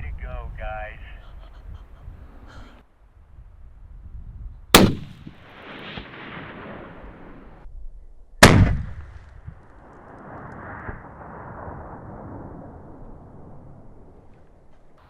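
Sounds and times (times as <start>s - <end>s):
rifle shots with rolling echo: 4.7s - 7.6s, 8.4s - 14.3s.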